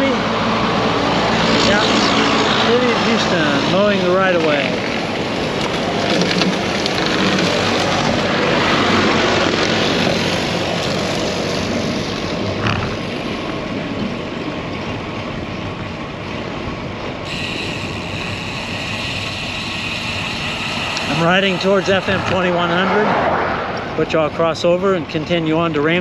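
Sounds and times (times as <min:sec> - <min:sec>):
tractor engine drone: 0:00.0 - 0:26.0
high hiss: 0:17.3 - 0:24.2
wind rushing over microphone: 0:19.2 - 0:24.8.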